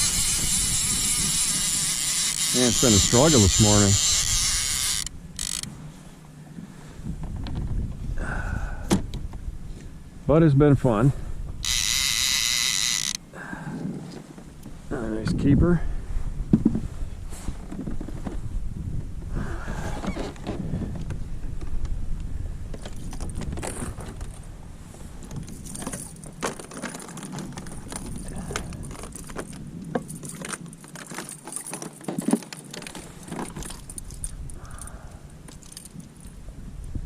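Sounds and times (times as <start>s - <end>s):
fishing gear clicking and clinking: 0.0s - 5.7s, 11.6s - 13.2s, 25.2s - 36.4s
low wind rumble: 0.0s - 26.4s, 33.0s - 37.0s.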